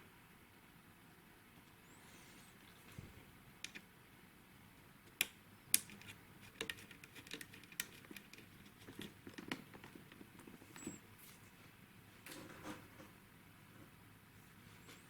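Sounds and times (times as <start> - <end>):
clicks and taps of small parts: 5.1 - 10.2.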